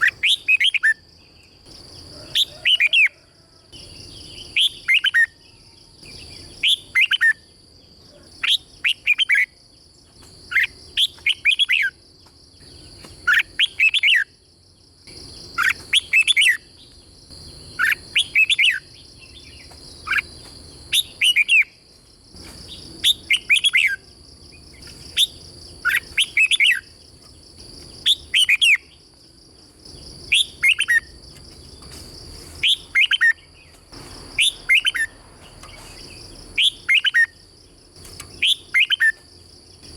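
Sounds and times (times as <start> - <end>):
bird singing whistled notes: 0.0 - 1.1, 4.0 - 7.5, 10.5 - 12.0, 12.6 - 14.4, 15.5 - 17.0, 17.7 - 20.3, 20.9 - 21.8, 23.0 - 24.0, 24.8 - 26.9, 28.0 - 29.0, 30.3 - 31.1, 32.6 - 33.8, 34.4 - 37.4, 38.3 - 39.2.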